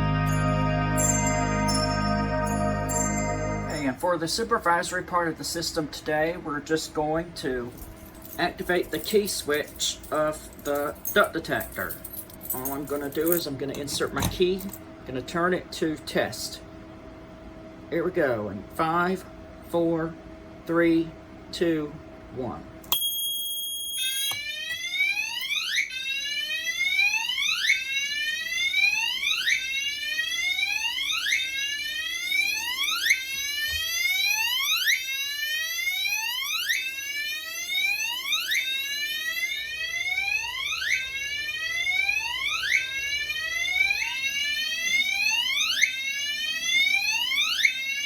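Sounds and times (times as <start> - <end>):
steady alarm tone: 0.0 - 4.0, 22.9 - 48.0
sweeping alarm tone: 0.0 - 4.0, 22.9 - 48.0.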